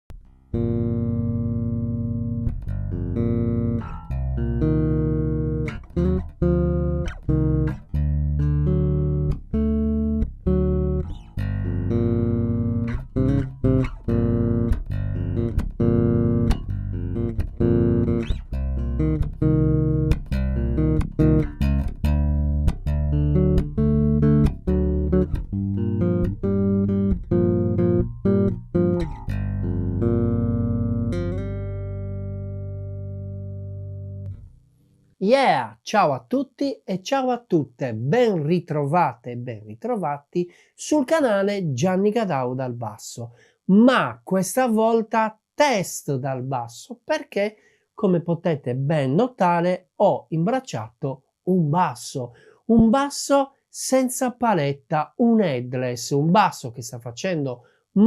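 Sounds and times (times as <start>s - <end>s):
electric bass groove: 0.1s - 34.6s.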